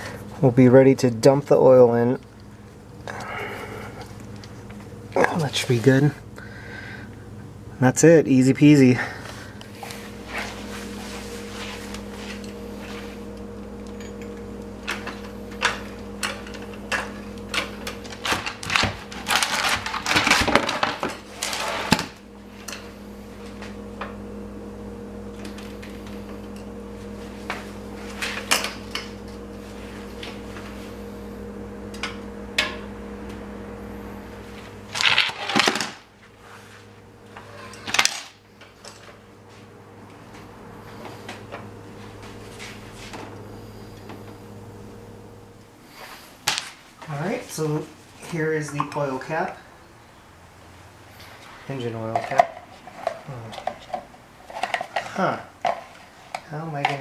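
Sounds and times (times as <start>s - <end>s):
steady hum: 0.0s - 57.0s.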